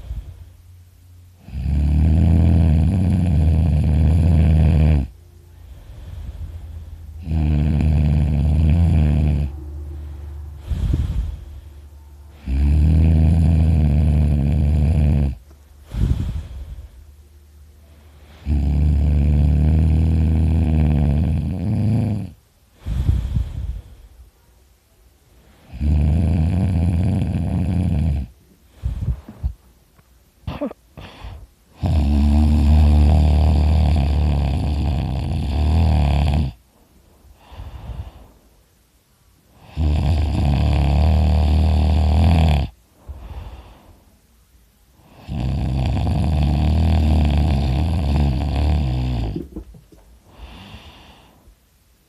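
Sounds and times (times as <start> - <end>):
person snoring loudly: 1.4 - 5.2, 7.2 - 11.6, 12.3 - 16.8, 18.3 - 23.7, 25.7 - 28.3, 30.5 - 36.6, 39.6 - 43.7, 45.1 - 49.7
breaths and snorts: 5.7 - 11.8, 12.4 - 17.0.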